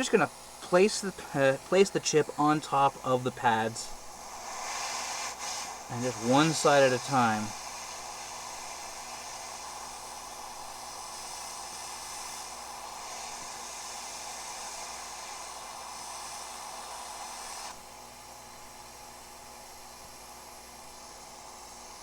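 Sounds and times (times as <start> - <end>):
faint hum: 0.0 - 17.3
hot air nozzle hissing: 0.0 - 18.0, 20.7 - 22.0.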